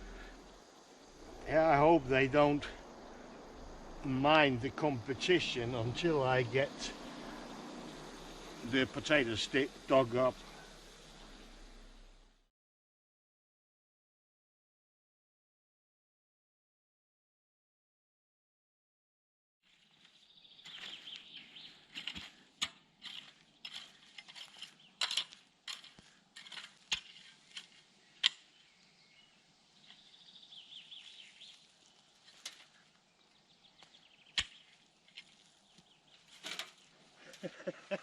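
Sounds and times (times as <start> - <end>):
shovel scraping sandy soil: 20.6 - 29.2, 29.8 - 33.1, 33.8 - 37.6.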